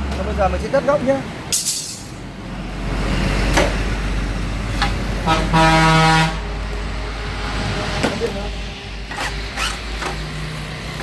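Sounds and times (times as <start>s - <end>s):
loud horn-like tone: 5.2s - 6.5s.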